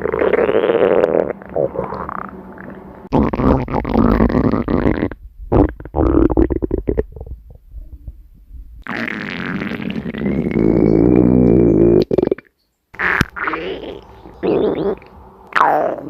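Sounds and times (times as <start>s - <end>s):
stomach growling: 0.0s - 8.2s, 8.8s - 12.5s.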